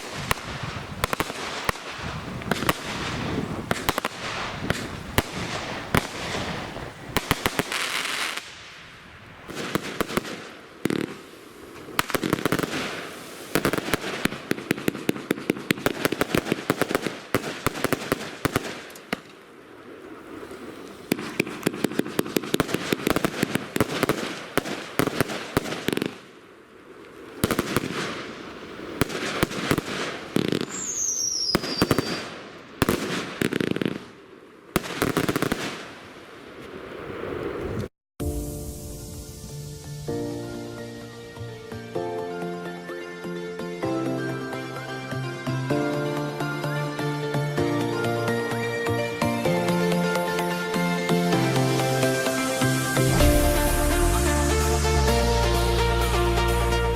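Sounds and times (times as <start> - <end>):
firework launch shots: 0.0 - 19.4, 20.5 - 26.2, 27.4 - 34.2, 34.8 - 39.4, 52.1 - 56.1
firework crackling bursts: 0.0 - 42.1, 44.2 - 56.9
falling firework whistle: 29.2 - 33.7, 37.3 - 43.1, 47.9 - 56.9.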